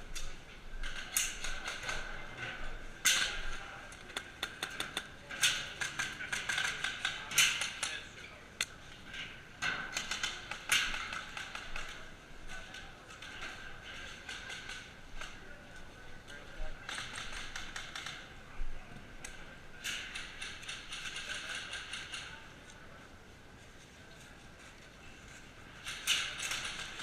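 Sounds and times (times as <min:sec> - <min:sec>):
sharp clicks and snaps: 0:03.9 - 0:08.0.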